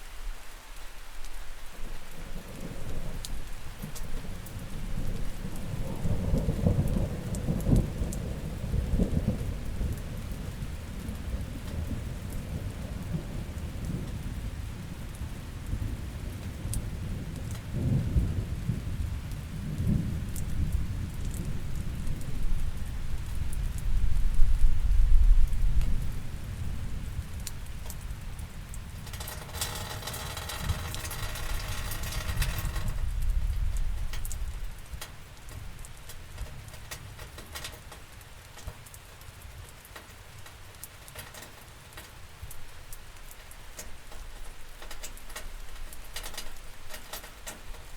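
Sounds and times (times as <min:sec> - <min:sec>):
steady rain: 0:00.0 - 0:47.9
rolling thunder: 0:02.2 - 0:37.6.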